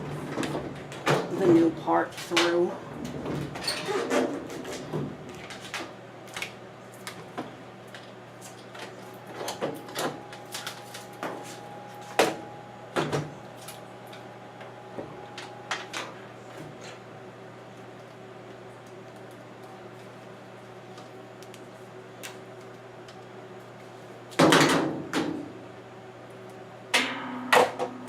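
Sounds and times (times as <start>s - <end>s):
low steady hum: 6.2s - 24.2s.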